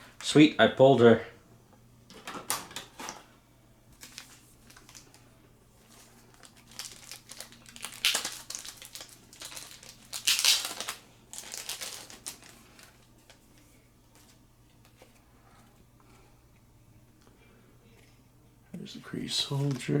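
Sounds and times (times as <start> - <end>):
plastic packaging crinkling: 3.9 - 15.1.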